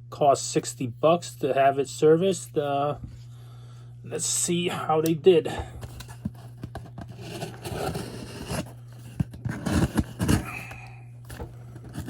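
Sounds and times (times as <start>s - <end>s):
steady low hum: 0.0s - 12.0s
cardboard and tape tearing: 6.0s - 12.0s.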